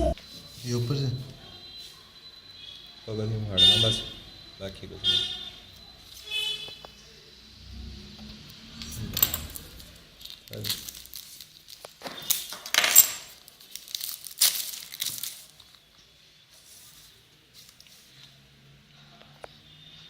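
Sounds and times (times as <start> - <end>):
packaging tearing and crinkling: 10.3 - 12.6, 13.4 - 15.6.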